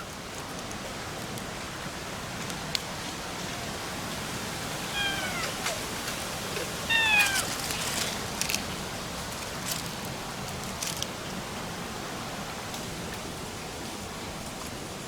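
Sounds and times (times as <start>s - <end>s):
cat meowing: 4.7s - 8.0s
soft rustles and clicks: 5.0s - 11.4s.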